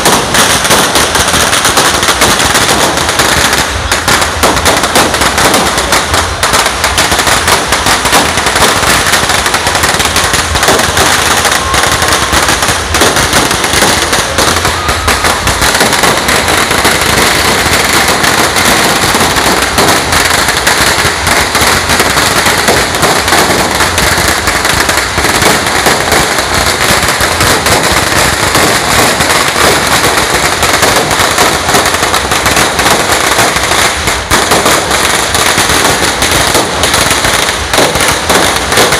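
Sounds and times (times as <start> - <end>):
firecrackers and fireworks barrage: 0.0 - 38.9.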